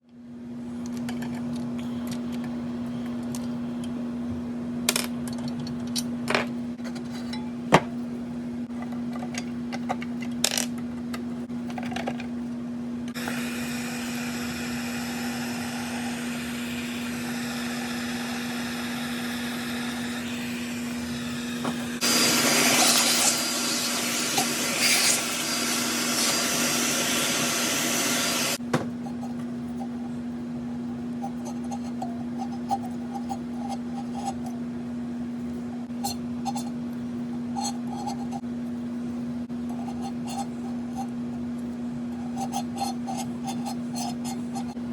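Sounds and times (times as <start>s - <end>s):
disc sander motor hum: 13.1s - 28.6s.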